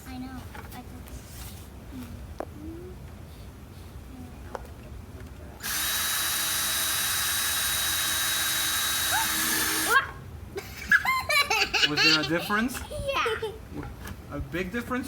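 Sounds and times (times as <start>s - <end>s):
electric drill boring into plastic: 5.6s - 10.0s.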